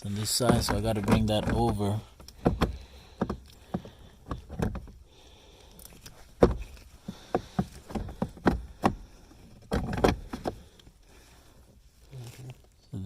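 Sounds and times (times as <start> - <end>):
knocks and clicks of handled motor: 0.2 - 5.0, 5.8 - 10.9.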